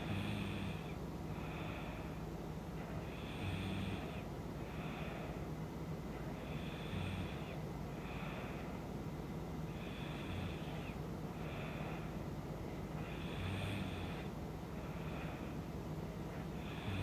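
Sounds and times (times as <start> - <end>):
woman snoring: 0.0 - 0.8, 3.1 - 4.2, 6.5 - 7.5, 13.1 - 14.3, 16.6 - 17.0.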